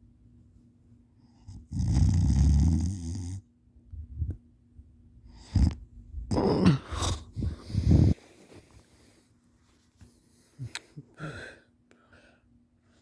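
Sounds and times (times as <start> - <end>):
person snoring: 5.4 - 8.2
snorts and gasping breaths: 6.4 - 9.2.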